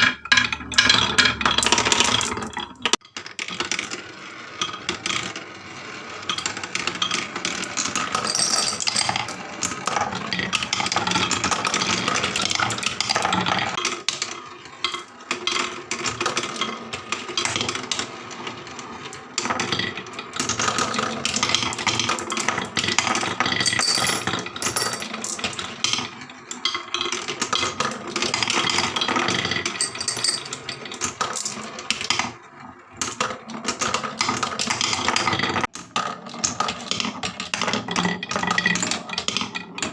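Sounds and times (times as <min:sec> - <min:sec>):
marbles rolling down wooden run: 0:03.4 - 0:13.4, 0:19.4 - 0:26.1, 0:27.4 - 0:31.7.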